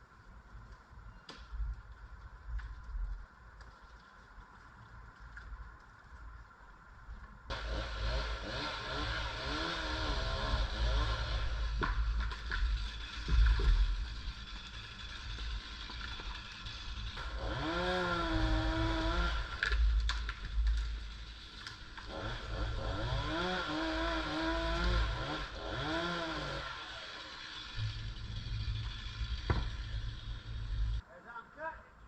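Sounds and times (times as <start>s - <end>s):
chainsaw engine revving: 7.5s - 12.2s, 17.0s - 19.9s, 22.0s - 31.0s.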